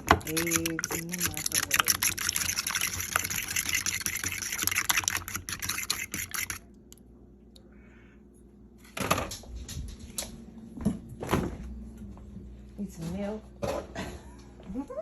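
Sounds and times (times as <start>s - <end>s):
kitchen clicking and scraping: 0.0s - 6.6s.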